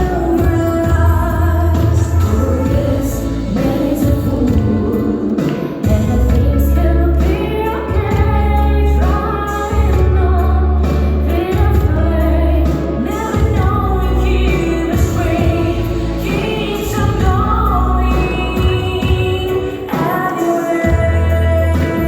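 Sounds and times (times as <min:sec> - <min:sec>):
woman singing: 0:00.0 - 0:22.0
strong steady bass: 0:05.9 - 0:19.2.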